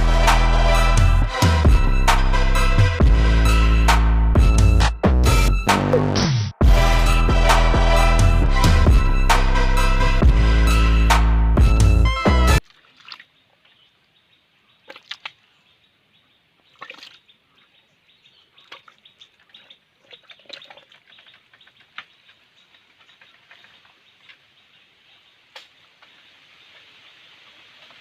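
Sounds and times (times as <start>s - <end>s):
water and mud splashing: 12.6s - 14.0s, 14.8s - 15.6s, 16.6s - 17.5s, 18.4s - 28.0s.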